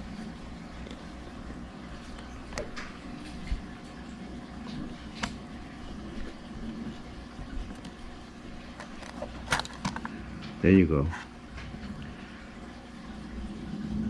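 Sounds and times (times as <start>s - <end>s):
steady low hum: 0.0s - 14.0s
handling noise: 8.7s - 10.2s.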